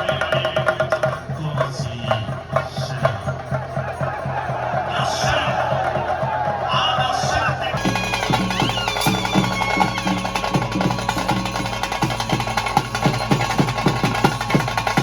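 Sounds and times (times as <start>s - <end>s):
drums beaten in fast rhythm: 0.0s - 15.0s
steady held tone: 7.8s - 15.0s.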